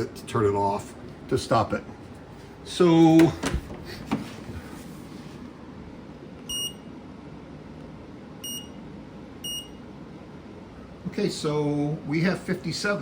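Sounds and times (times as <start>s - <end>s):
steady low air noise: 0.0s - 13.0s
air conditioner beeps: 1.3s - 4.4s, 6.0s - 10.6s.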